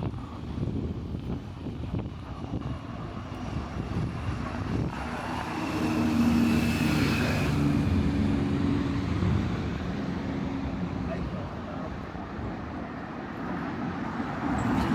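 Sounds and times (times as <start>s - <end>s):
city background noise: 0.0s - 14.9s
passing vehicle engine drone: 4.0s - 11.1s.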